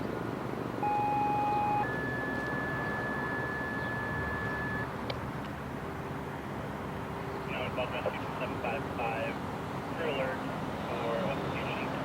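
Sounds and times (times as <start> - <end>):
two-tone pager tones: 0.8 - 4.9.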